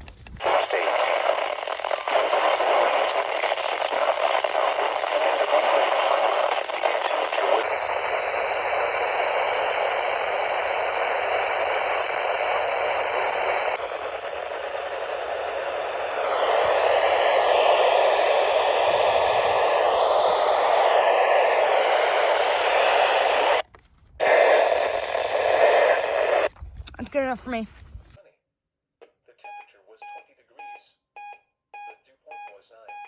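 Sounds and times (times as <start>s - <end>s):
radio static hiss: 0.0s - 23.6s, 24.2s - 26.5s.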